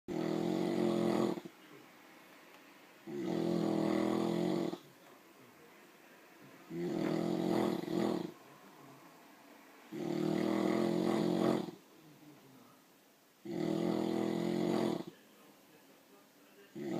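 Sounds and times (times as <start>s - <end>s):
deep snoring: 0.1s - 1.5s, 3.0s - 4.9s, 6.7s - 8.4s, 9.9s - 11.8s, 13.4s - 15.1s
quiet breaths: 0.1s - 16.9s.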